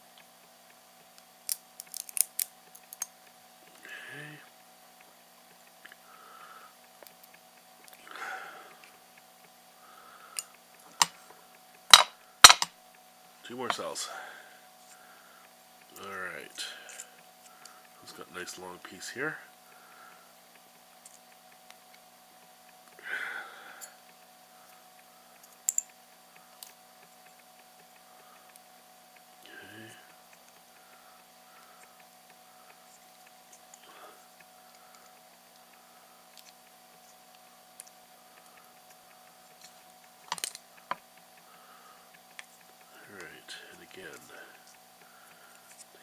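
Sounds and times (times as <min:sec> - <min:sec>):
faint steady hum: 0:00.0 - 0:46.0
faint breathing through nose: 0:06.0 - 0:06.9, 0:08.0 - 0:08.9, 0:09.8 - 0:11.4, 0:14.0 - 0:15.6, 0:19.6 - 0:20.4, 0:23.0 - 0:25.4, 0:29.5 - 0:33.0, 0:33.8 - 0:36.3, 0:41.4 - 0:42.2, 0:42.8 - 0:46.0
cutters snipping metal: 0:11.9 - 0:12.7
handling clicks: 0:11.9 - 0:12.7.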